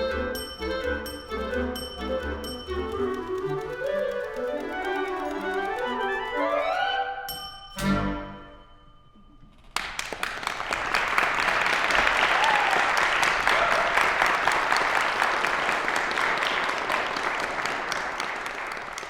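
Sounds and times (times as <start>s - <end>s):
audience applauding: 9.7s - 19.0s.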